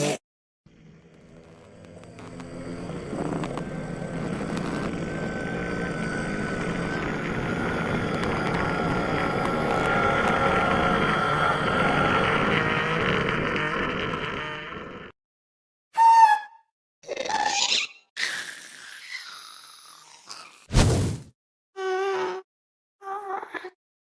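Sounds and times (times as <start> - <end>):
engine running with wavering whine: 0.7 - 15.1.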